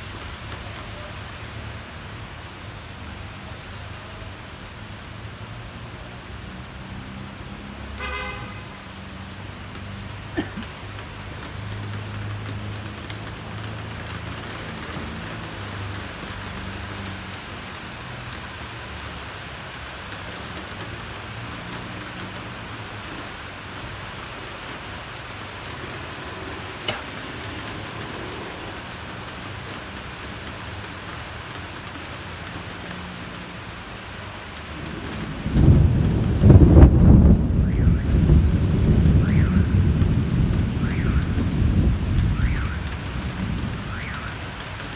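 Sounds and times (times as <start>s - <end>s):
steady rain falling: 0.0s - 44.9s
loud thunder: 35.0s - 43.9s.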